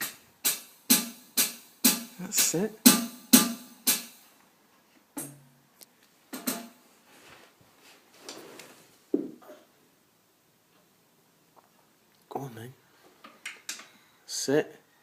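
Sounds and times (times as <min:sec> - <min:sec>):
electronic drum hits: 0:00.0 - 0:04.2, 0:06.4 - 0:06.8.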